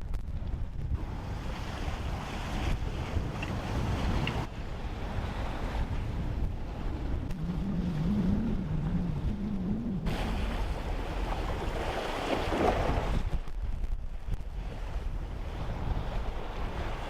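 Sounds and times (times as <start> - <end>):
water rushing along boat hull: 0.0 - 17.0
wind buffeting microphone: 0.0 - 17.0
low wavering hum: 2.9 - 12.3.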